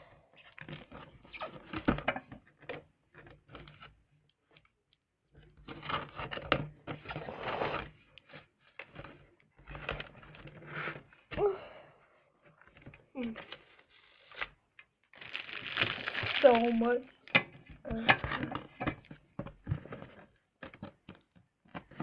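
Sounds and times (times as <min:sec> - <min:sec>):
cardboard and plastic packaging crinkling: 0:12.7 - 0:22.0.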